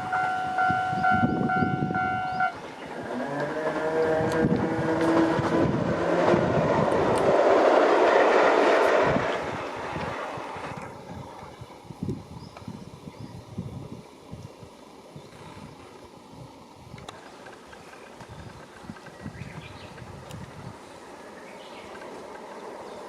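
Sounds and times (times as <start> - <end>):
train motor whine: 0.0 - 10.1
train cars rushing by: 0.0 - 11.2.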